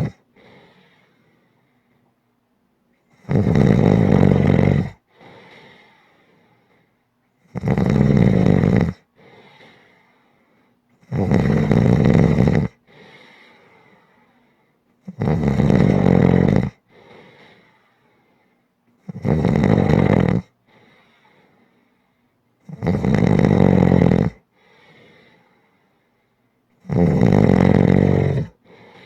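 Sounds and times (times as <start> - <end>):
loud snores: 0.0 - 0.6, 3.1 - 5.8, 7.4 - 9.1, 11.0 - 12.8, 15.0 - 17.4, 19.0 - 20.6, 22.6 - 25.4, 26.8 - 29.0
soft short breath: 0.3 - 2.1, 9.2 - 10.8, 12.9 - 14.8, 20.6 - 22.4, 24.5 - 26.5.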